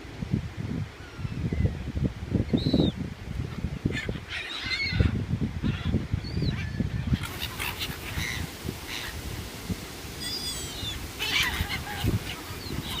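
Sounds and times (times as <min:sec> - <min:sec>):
seagulls squawking: 0:03.9 - 0:09.2, 0:10.2 - 0:13.0.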